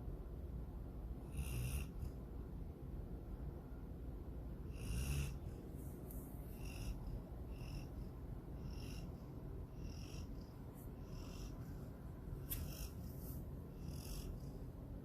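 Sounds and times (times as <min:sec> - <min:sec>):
dog snoring with whistle: 0:01.2 - 0:02.2, 0:04.7 - 0:05.6, 0:06.5 - 0:11.7, 0:12.5 - 0:13.2, 0:13.8 - 0:14.7.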